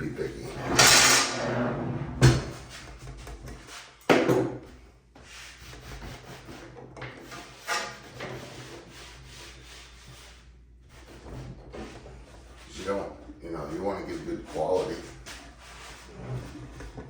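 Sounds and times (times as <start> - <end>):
wet rag rubbing wood: 14.0 - 16.8.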